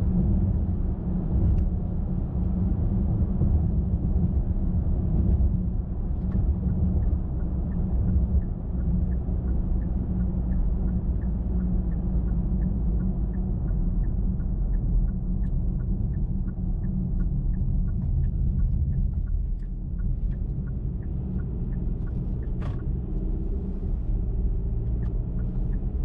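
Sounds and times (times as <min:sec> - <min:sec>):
car tyres and engine rumble: 0:00.0 - 0:26.0
faint regular ticking: 0:06.3 - 0:26.0.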